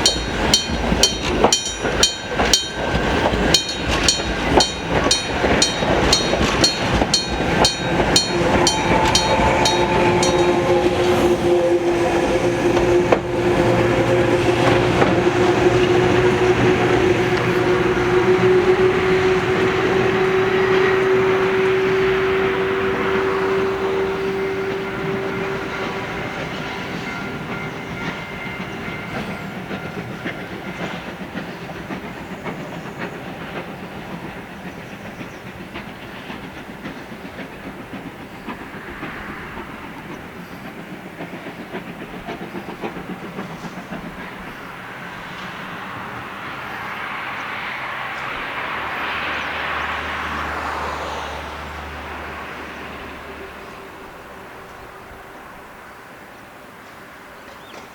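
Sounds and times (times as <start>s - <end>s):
train wheels clicking over rail joints: 0.0s - 11.4s, 12.0s - 57.9s
electric locomotive motor whine: 0.0s - 31.7s.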